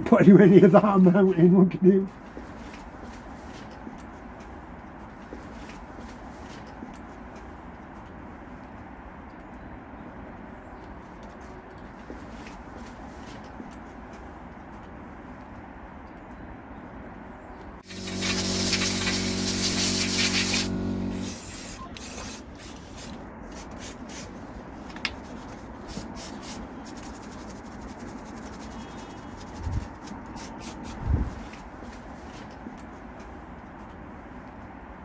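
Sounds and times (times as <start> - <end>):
low buzzing tone: 17.8 - 21.9
aerosol spray can hissing: 17.8 - 22.8
rubbing: 25.2 - 30.8.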